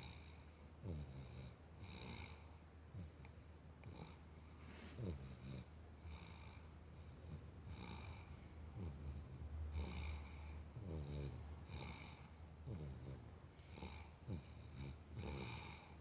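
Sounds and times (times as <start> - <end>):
snoring with whistling breath: 10.8 - 15.9.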